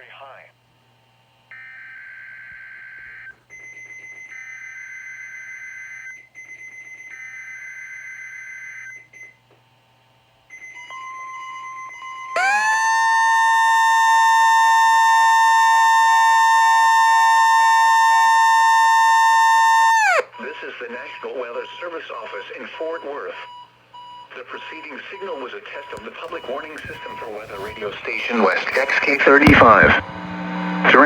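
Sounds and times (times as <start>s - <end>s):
steady warning alarm tone: 10.5s - 20.3s.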